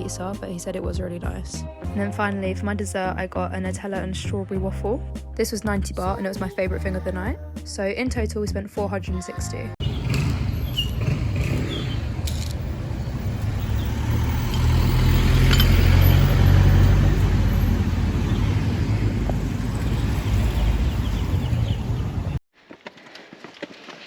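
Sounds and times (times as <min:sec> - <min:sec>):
road vehicle rumble: 0:09.7 - 0:22.4.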